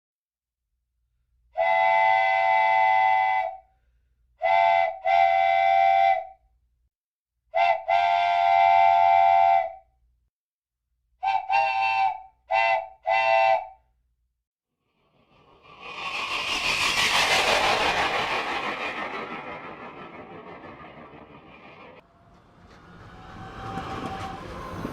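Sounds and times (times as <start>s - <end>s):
train whistle blasts: 1.6s - 3.7s, 4.4s - 6.4s, 7.6s - 9.9s, 11.2s - 13.8s.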